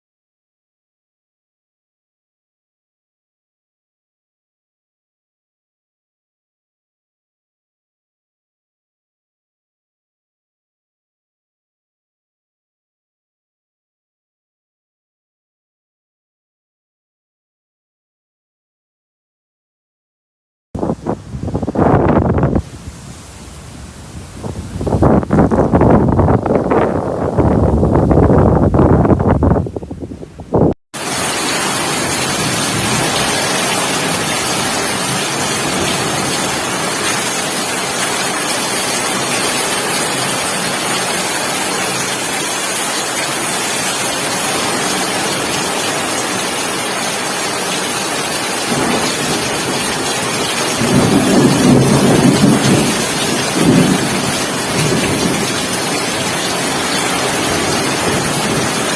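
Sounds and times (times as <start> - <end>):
heavy rain pouring: 20.8 - 58.9
thunder rumbling: 21.2 - 42.2, 48.6 - 58.9.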